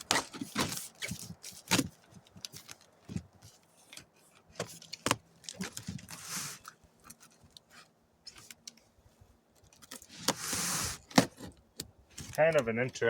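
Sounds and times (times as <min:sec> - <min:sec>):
cardboard tape tearing: 0:00.0 - 0:01.9, 0:09.9 - 0:11.6
cardboard box knocks and crinkles: 0:00.0 - 0:03.6.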